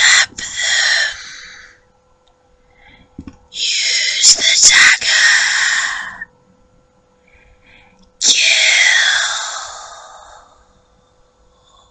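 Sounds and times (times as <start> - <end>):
person whispering: 0.0 - 1.6, 3.6 - 6.2, 8.2 - 10.4
faint steady hum: 0.0 - 11.9.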